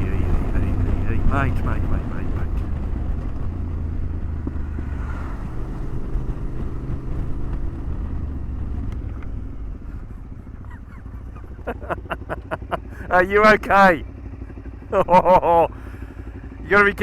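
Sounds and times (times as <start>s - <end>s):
low engine rumble: 0.0s - 17.0s
wind noise on microphone: 2.4s - 9.2s.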